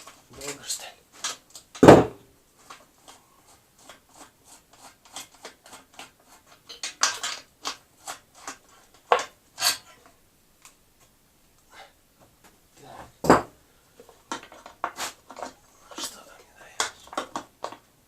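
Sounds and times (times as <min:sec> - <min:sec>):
loud knocks: 0:01.8 - 0:02.2.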